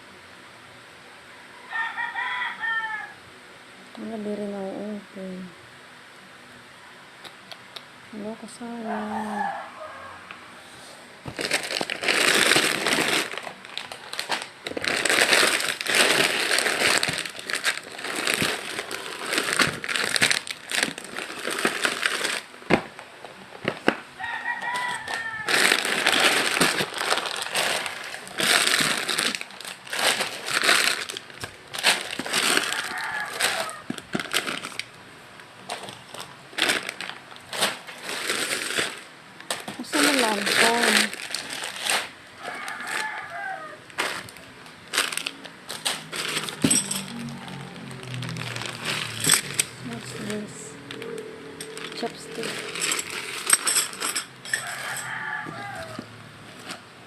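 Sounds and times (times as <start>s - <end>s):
plastic packaging crinkling: 11.3s - 35.0s, 35.6s - 56.9s.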